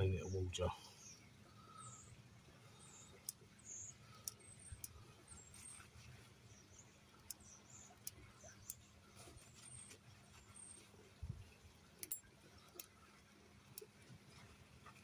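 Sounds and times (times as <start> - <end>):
faint high bird chirps: 0.0 - 11.6
small sharp clicks: 2.9 - 5.9, 7.1 - 8.9, 11.9 - 13.1.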